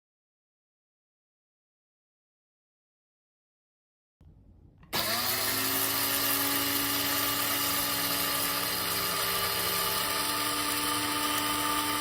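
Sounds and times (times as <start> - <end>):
coffee grinder motor whining: 4.9 - 12.0.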